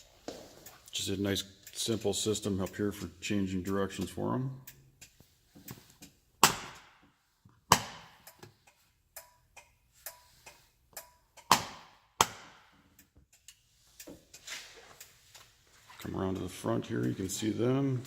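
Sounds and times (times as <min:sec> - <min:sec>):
turn signal switch clicks: 0:03.9 - 0:06.9, 0:07.7 - 0:15.1.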